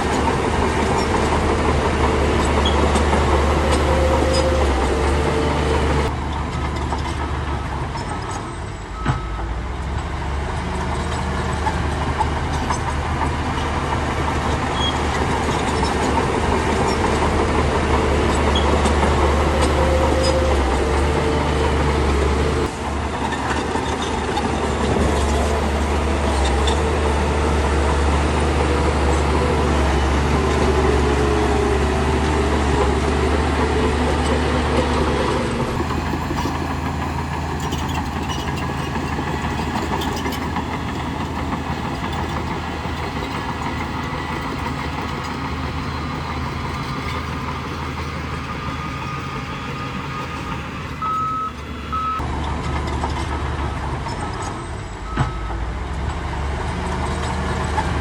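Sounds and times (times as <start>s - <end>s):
bulldozer diesel engine humming: 0.0s - 54.1s
reversing alarm beeping: 35.8s - 52.2s.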